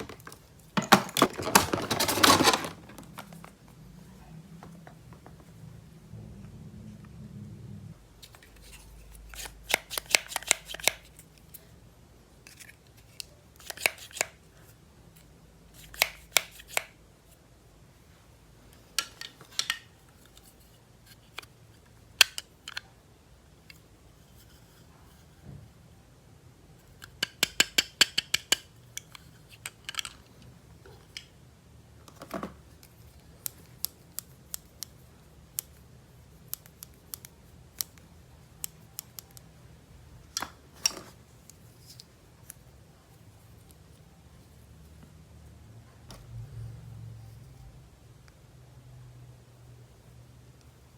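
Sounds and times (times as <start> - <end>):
plastic toys clicking: 9.4 - 11.2, 13.0 - 14.4, 27.0 - 30.2.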